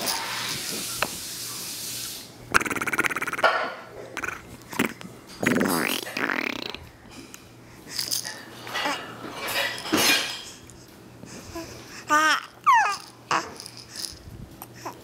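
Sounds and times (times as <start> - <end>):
baby grunting: 2.5 - 6.8
baby squealing: 12.1 - 13.6.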